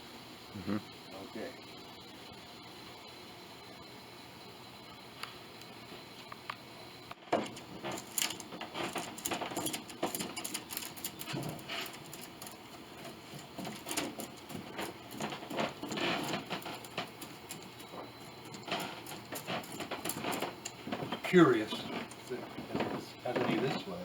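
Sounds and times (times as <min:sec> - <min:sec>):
hand handling clicks and scrapes: 0:07.4 - 0:23.6.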